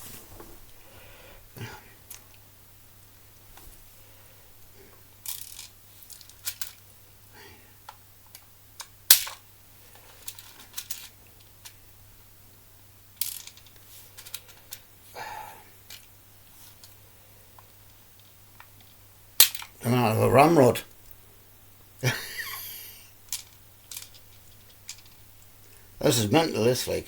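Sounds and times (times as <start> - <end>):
rifle clicks and rattles: 5.2 - 6.8, 13.2 - 14.8, 23.3 - 25.2.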